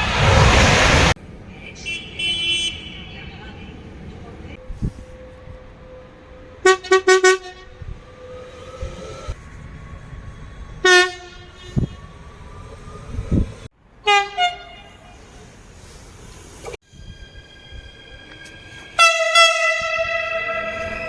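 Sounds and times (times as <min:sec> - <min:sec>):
train horn toots: 0:04.6 - 0:09.5, 0:10.7 - 0:12.1, 0:14.0 - 0:15.1, 0:18.4 - 0:21.0.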